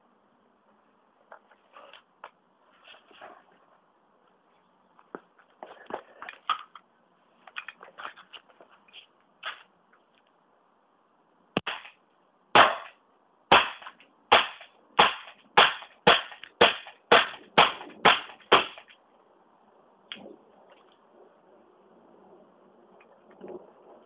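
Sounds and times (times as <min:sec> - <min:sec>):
airsoft pistol shots: 0:11.6 - 0:11.9, 0:12.6 - 0:18.8.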